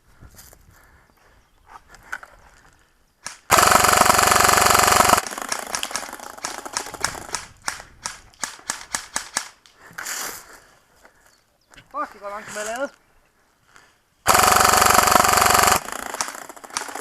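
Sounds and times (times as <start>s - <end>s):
sharp snaps: 3.2s - 9.8s, 14.3s - 17.0s
airsoft gun full-auto burst: 3.5s - 7.5s, 14.3s - 17.0s.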